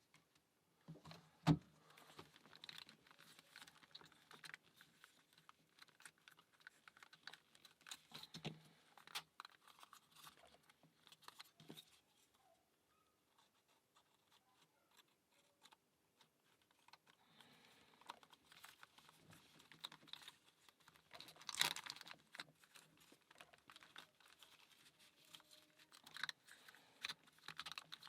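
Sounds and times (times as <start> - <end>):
wooden puzzle clatter: 16.2 - 28.0.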